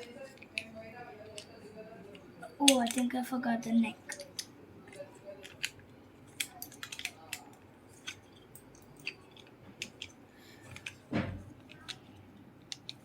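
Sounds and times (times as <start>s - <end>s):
plastic bricks clicking: 2.6s - 3.1s, 4.0s - 13.0s.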